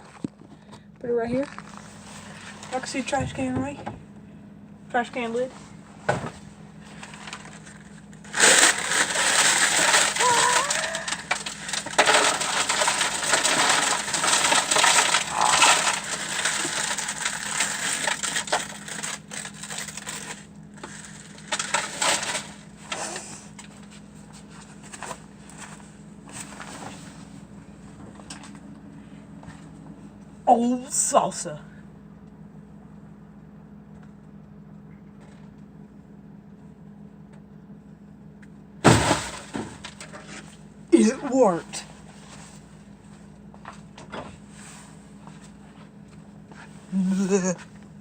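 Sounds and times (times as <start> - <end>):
steady low hum: 0.0 - 48.0
chips crackling and crunching: 7.0 - 22.7.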